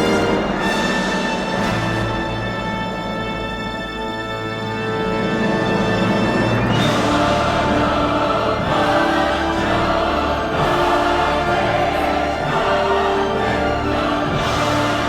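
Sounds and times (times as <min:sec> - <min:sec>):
orchestral music: 0:00.0 - 0:15.0
choir singing long notes: 0:05.1 - 0:15.0.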